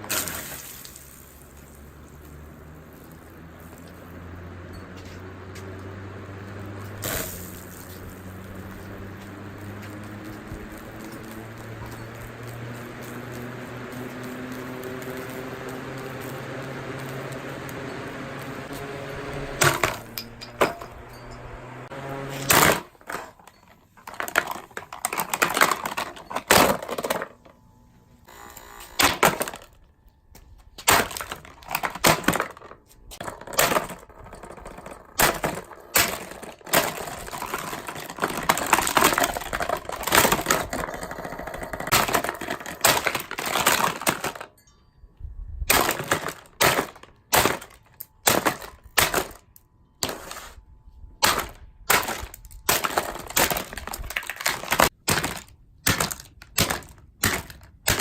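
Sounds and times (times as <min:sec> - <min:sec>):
fan humming: 0:00.8 - 0:30.0
plastic cracking and crunching: 0:22.5 - 0:27.4, 0:30.8 - 0:34.1, 0:34.8 - 0:44.5, 0:45.7 - 0:50.2, 0:51.2 - 0:58.0.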